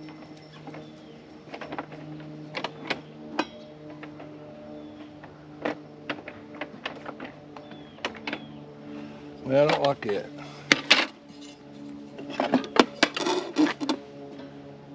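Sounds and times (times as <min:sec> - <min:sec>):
steady low hum: 0:00.0 - 0:14.9
sharp clicks and knocks of tools: 0:09.6 - 0:14.5.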